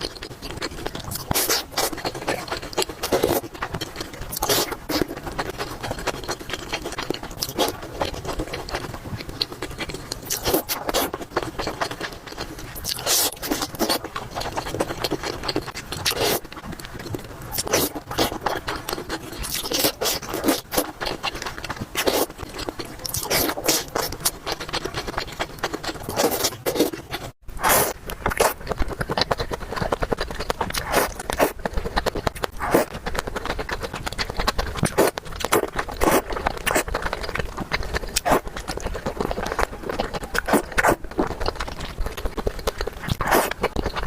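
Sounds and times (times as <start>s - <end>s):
crunching and chewing food: 0.0s - 44.0s.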